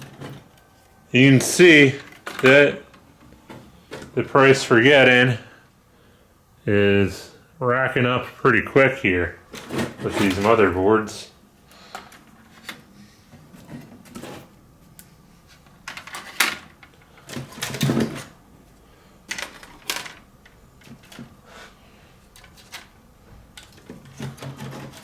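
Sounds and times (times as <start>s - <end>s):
circuit boards clattering: 15.6s - 18.4s, 19.2s - 21.4s, 22.3s - 25.0s.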